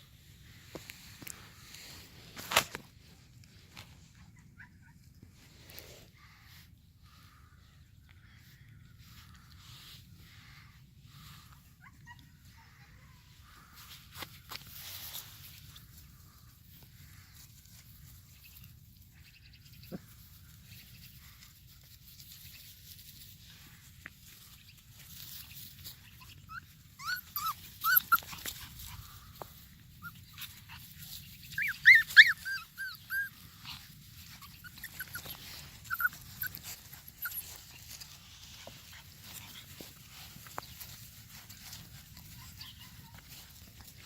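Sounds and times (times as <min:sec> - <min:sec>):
puppies whimpering and squeaking: 0:11.7 - 0:13.0, 0:24.4 - 0:44.0.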